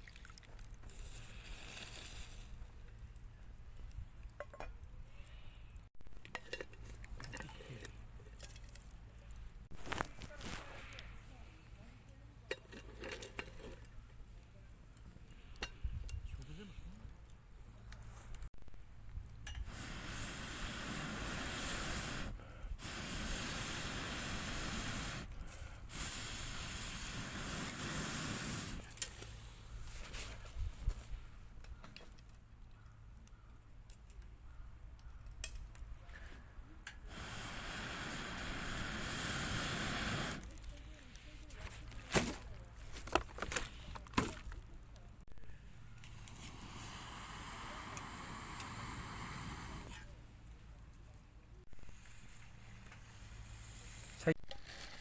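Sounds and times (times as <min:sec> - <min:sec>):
rushing hiss of air: 0:19.6 - 0:28.9, 0:37.0 - 0:40.5, 0:46.1 - 0:50.1.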